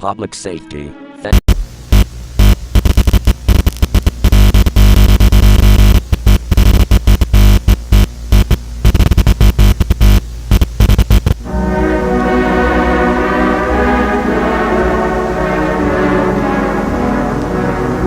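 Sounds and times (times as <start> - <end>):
distorted electronic music: 8.3 - 18.0.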